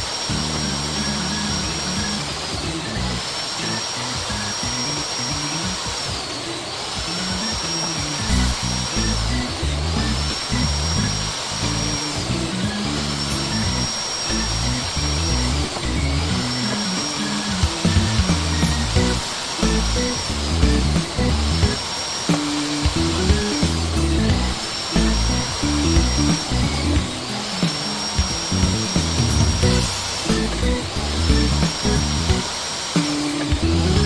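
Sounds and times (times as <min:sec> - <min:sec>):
background music with beat: 0:00.0 - 0:34.0.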